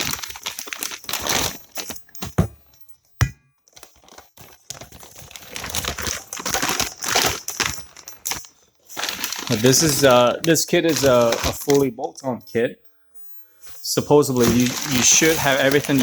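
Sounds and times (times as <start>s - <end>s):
packing material rustling: 0.0s - 2.6s, 3.9s - 11.9s, 14.2s - 16.0s.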